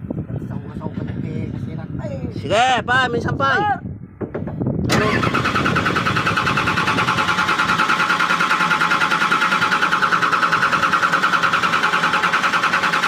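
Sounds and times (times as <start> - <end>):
starter motor cranking engine: 4.9 - 13.0.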